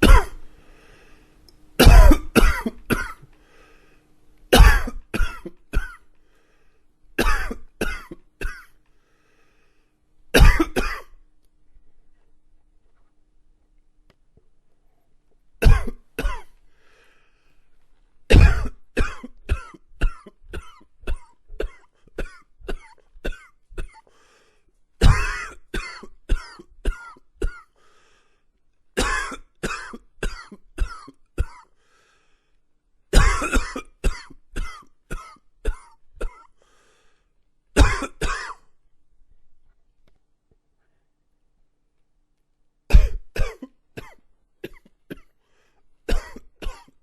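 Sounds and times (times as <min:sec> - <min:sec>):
man coughing: 0:00.0 - 0:00.4, 0:01.8 - 0:03.2, 0:04.6 - 0:06.0, 0:07.2 - 0:08.8, 0:10.4 - 0:11.2, 0:15.6 - 0:16.5, 0:18.3 - 0:24.1, 0:25.0 - 0:27.7, 0:29.0 - 0:31.7, 0:33.1 - 0:36.6, 0:37.8 - 0:38.6, 0:42.9 - 0:45.3, 0:46.1 - 0:47.0.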